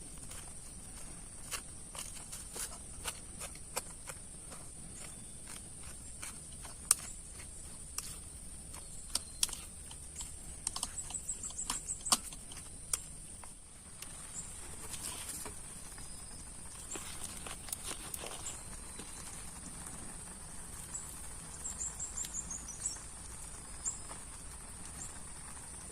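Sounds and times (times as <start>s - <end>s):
raindrops tapping on a tent: 16.6s - 25.9s.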